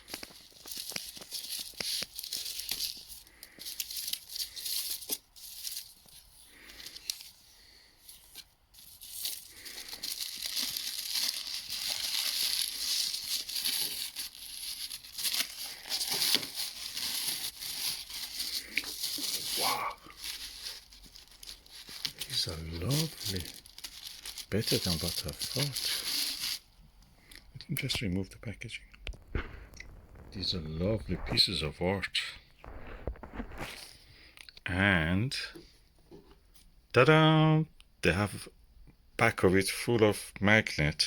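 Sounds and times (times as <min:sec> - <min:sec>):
packaging torn and crumpled: 0:00.0 - 0:07.4, 0:08.2 - 0:26.7, 0:29.1 - 0:31.4, 0:32.6 - 0:33.9.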